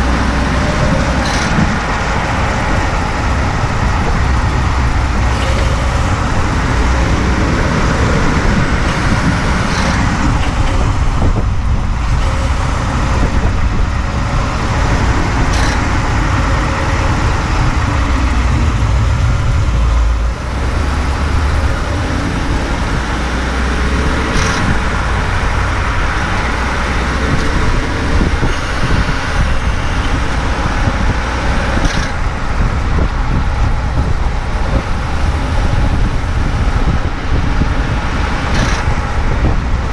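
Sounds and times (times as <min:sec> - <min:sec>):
truck engine rumble: 0:00.0 - 0:39.9
sharp clicks: 0:14.7 - 0:17.1, 0:24.3 - 0:25.0, 0:38.5 - 0:38.9.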